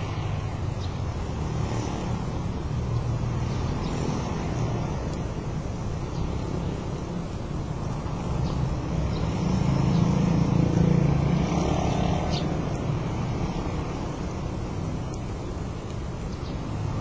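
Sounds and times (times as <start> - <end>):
vehicle engine passing by: 6.0 - 15.1.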